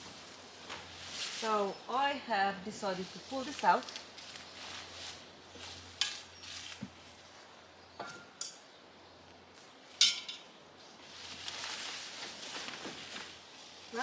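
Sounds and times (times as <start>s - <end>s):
foliage rustling: 0.0s - 7.7s, 10.7s - 14.0s.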